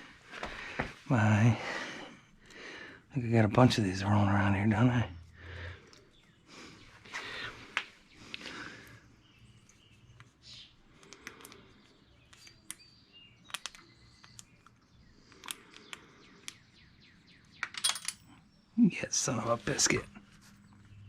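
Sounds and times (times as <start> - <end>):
small hardware clicking and clinking: 17.6 - 18.5.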